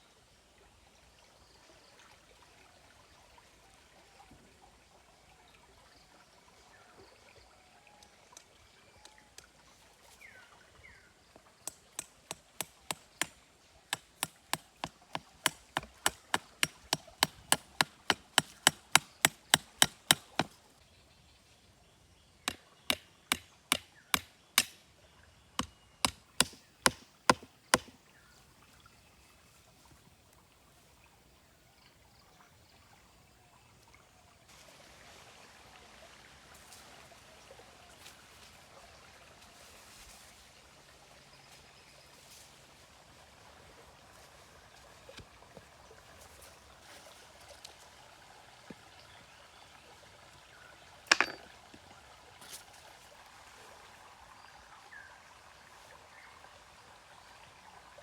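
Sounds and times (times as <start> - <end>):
knife chopping: 25.6 - 28.0.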